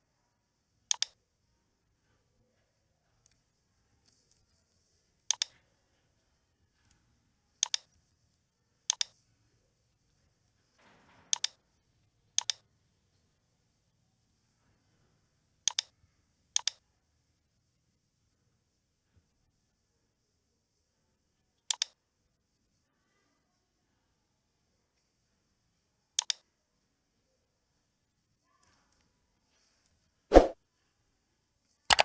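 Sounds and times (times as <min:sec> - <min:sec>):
mouse button clicks: 0:30.3 - 0:30.6.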